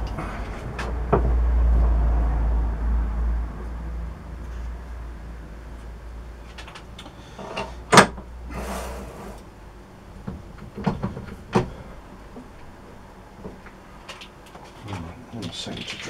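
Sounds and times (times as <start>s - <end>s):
low machine hum: 0.0s - 16.0s
scraping hiss: 8.5s - 9.5s
metal knocks and clatters: 10.2s - 11.8s.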